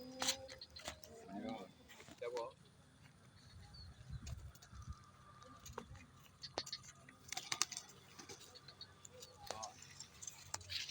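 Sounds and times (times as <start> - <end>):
bird chirp: 0.0 - 1.3, 7.8 - 10.9.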